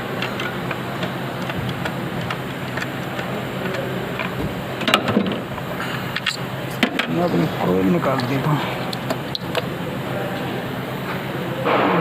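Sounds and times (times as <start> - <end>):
hand tools ticking and clicking: 0.0 - 4.4
steady hum: 0.0 - 12.0.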